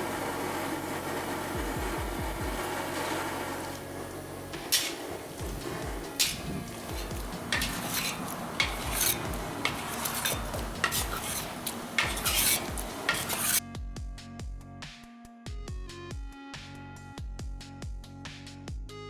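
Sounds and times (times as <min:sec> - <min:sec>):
steady cooking hiss: 0:00.0 - 0:13.6
music beat: 0:01.6 - 0:02.8, 0:04.4 - 0:14.7
utensils clinking on cookware: 0:03.6 - 0:13.6.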